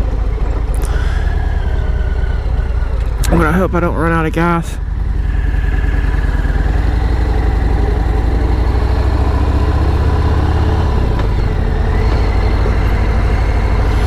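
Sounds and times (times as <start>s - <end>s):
road noise: 0.0s - 14.0s
vehicle engine running: 0.0s - 14.0s.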